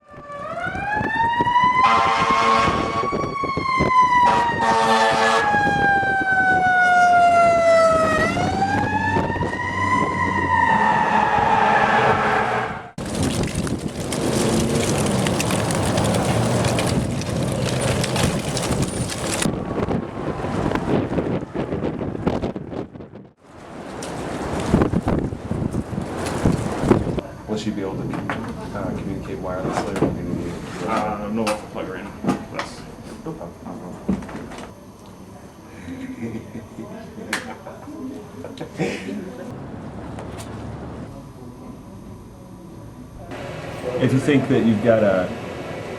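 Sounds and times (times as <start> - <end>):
emergency siren wailing: 0.0 - 13.0
wind buffeting microphone: 0.2 - 4.8, 5.4 - 10.5, 13.0 - 23.4, 24.2 - 27.2
horn blasts: 1.8 - 3.1, 4.2 - 5.8.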